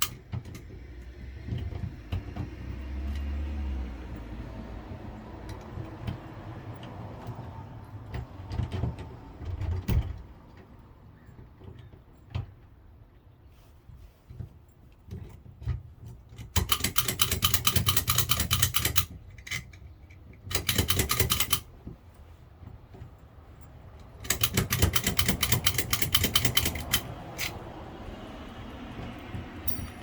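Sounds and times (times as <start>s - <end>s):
lock pick gun clicking: 16.5s - 19.7s, 20.5s - 21.7s, 24.2s - 27.6s.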